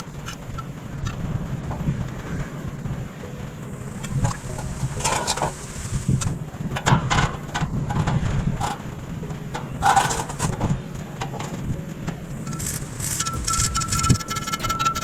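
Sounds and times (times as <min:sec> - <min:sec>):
steady low hum: 0:00.0 - 0:15.0
construction knocks and clatters: 0:06.2 - 0:15.0.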